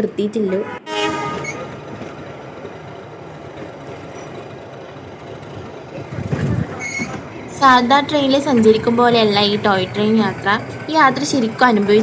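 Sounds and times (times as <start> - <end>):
train engine running: 0.0 - 12.0
train horn toot: 0.4 - 2.2.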